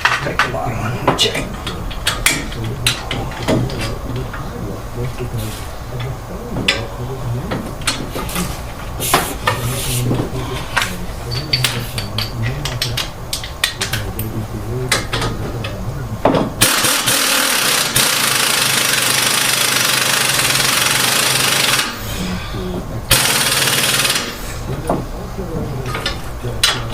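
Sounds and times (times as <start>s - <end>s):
impact wrench running: 16.2s - 22.1s, 23.1s - 24.7s.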